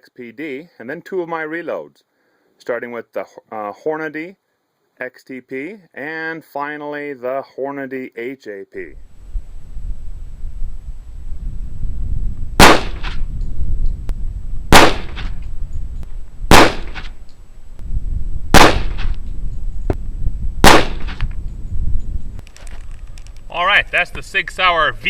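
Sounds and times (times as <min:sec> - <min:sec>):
pistol shots with echo: 0:12.6 - 0:13.2, 0:14.7 - 0:15.4, 0:16.5 - 0:17.1, 0:18.5 - 0:19.1, 0:20.6 - 0:21.2.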